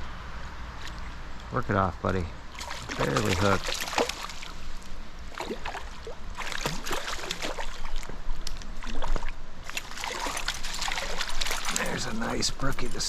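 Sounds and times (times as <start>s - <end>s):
fish splashing in stream: 2.5s - 12.2s.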